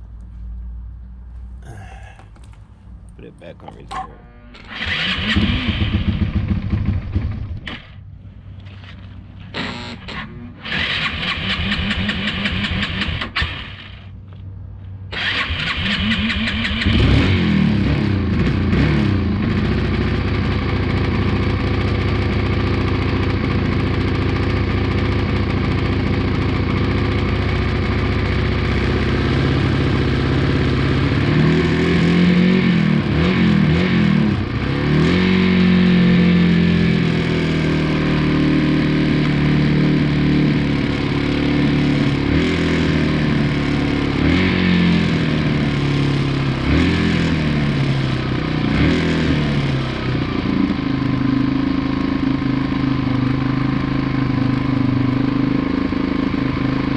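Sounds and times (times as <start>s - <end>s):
motorcycle starter cranking: 3.8s - 7.8s, 9.5s - 13.9s, 15.1s - 17.0s
motorcycle engine running and revving: 3.8s - 8.0s, 8.7s - 14.1s, 15.1s - 56.9s.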